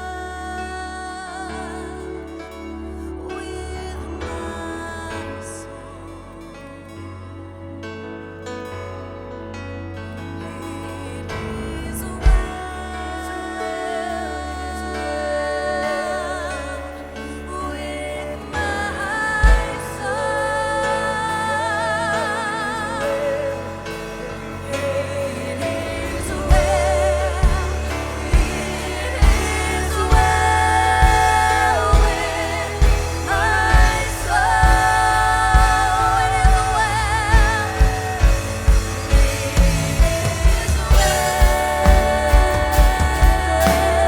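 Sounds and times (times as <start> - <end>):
synth piano and bass: 0.0 - 44.0
voices singing a hymn: 0.0 - 44.0
drums beating: 25.8 - 44.0.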